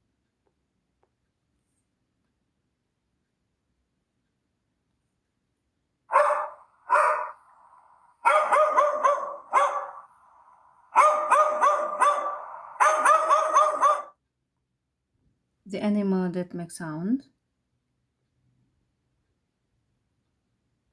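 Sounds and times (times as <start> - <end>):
dog barking: 6.1 - 14.2.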